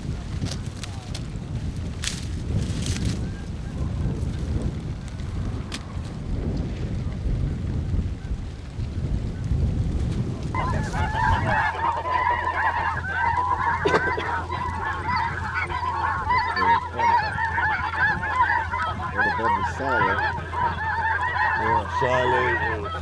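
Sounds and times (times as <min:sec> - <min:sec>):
wind buffeting microphone: 0:00.0 - 0:23.0
geese honking in chorus: 0:10.5 - 0:23.0.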